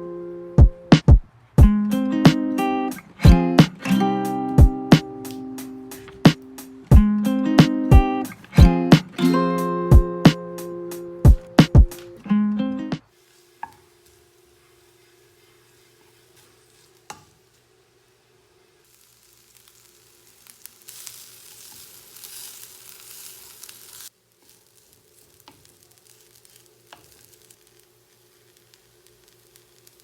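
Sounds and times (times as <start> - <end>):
food sizzling in a pan: 3.9 - 10.1, 13.1 - 30.0.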